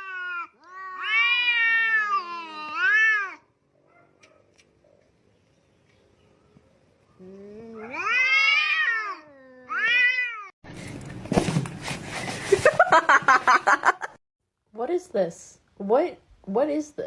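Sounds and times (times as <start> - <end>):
cat yowling: 0.0 - 3.5, 7.5 - 10.5.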